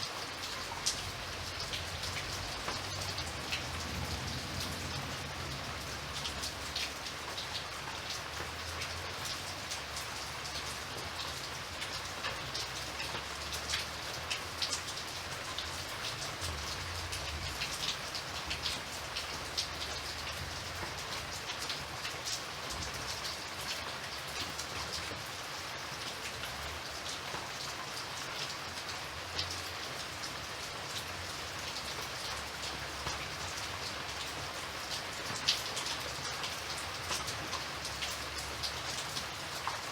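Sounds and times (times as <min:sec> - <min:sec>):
rain pattering on a surface: 0:00.0 - 0:39.9.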